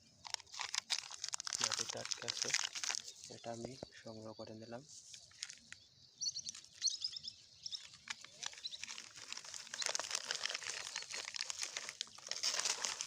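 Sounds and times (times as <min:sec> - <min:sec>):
small birds chirping: 0:00.0 - 0:13.0
plastic crinkling and rustling: 0:00.2 - 0:03.8, 0:04.9 - 0:05.8, 0:07.6 - 0:13.0.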